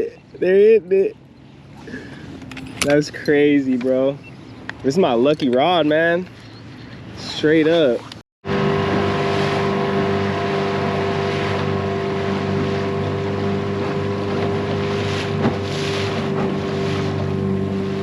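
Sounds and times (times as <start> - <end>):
boat motor running: 6.3 - 18.0.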